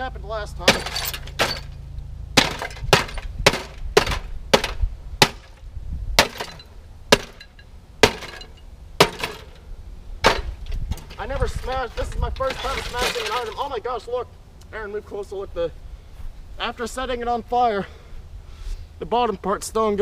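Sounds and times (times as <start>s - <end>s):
sledgehammer smashing microwave: 0.6s - 1.8s, 2.4s - 5.6s, 6.2s - 7.4s, 8.0s - 9.5s
glass shattering: 0.7s - 1.8s, 2.4s - 5.5s, 6.2s - 9.6s, 10.2s - 13.7s.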